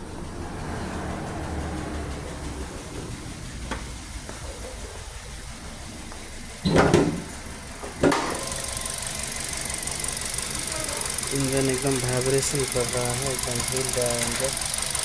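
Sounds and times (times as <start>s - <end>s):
car engine idling rough: 0.0s - 15.0s
loud clunk: 6.6s - 8.6s.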